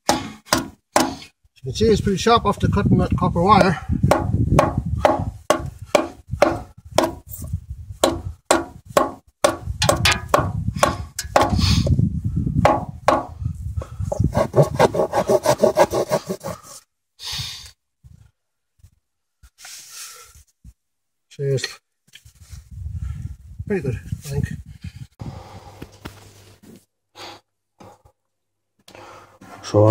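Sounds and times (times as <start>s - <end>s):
knife saw-back sawing: 14.3s - 16.7s.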